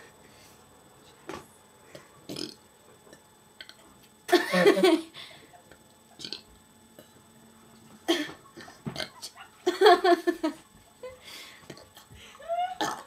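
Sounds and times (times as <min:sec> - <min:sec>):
woman belching: 0:12.5 - 0:13.0.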